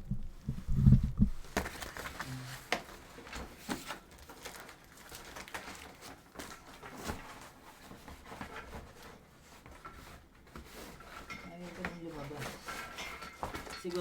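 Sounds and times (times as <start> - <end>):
cardboard box rustling and scraping: 0.0 - 14.0.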